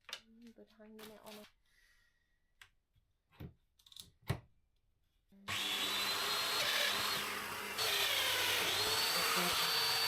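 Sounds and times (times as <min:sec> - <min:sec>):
joiner motor whining into wood: 0:05.5 - 0:10.0.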